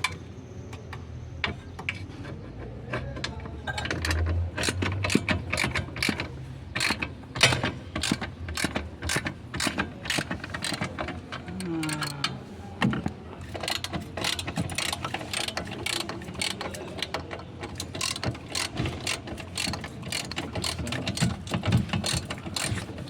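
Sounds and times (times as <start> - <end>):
ratchet wrench clicking: 3.8 - 11.0, 11.6 - 12.2, 13.5 - 21.4.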